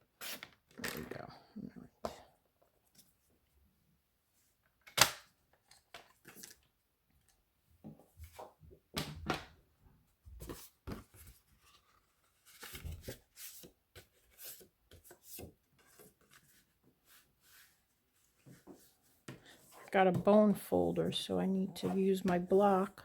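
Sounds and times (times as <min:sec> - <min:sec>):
paper rustling: 0:10.4 - 0:20.4.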